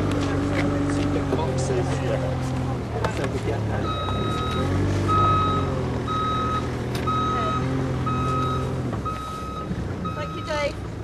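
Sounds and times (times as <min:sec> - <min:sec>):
reversing alarm beeping: 0:03.8 - 0:10.8.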